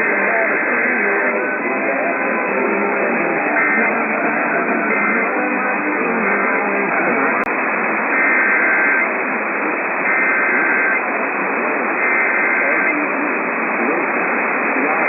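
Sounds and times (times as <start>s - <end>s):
radio static hiss: 0.0s - 15.0s
shrill two-tone digital data bursts: 8.1s - 9.1s, 10.0s - 11.0s, 12.0s - 13.0s.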